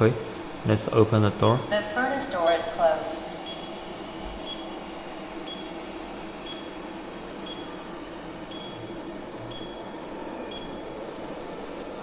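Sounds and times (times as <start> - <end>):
furnace machine hum: 0.0 - 12.0
short electronic beeps: 1.4 - 1.8, 2.5 - 2.8, 3.4 - 3.8, 4.5 - 4.7, 5.5 - 5.8, 6.5 - 6.8, 7.5 - 7.8, 8.5 - 8.9, 9.5 - 9.9, 10.5 - 10.9.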